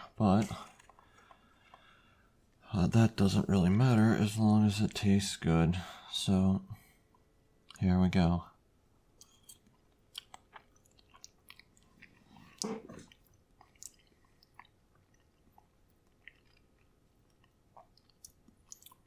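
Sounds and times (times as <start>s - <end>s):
person chewing food: 0.4s - 2.4s, 9.2s - 19.0s.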